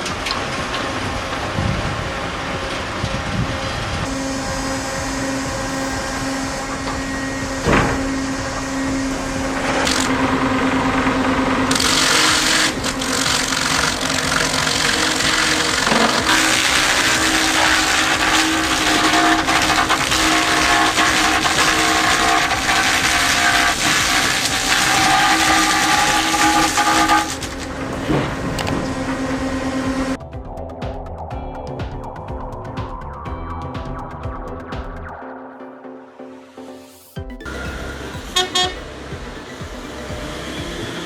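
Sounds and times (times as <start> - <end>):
heavy engines running: 0.0 - 30.2, 37.5 - 41.0.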